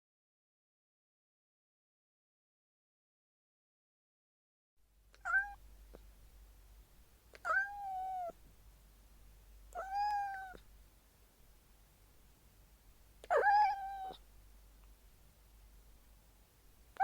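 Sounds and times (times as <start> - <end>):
cat meowing: 5.2 - 5.6, 7.4 - 8.4, 9.7 - 10.6, 13.2 - 14.2.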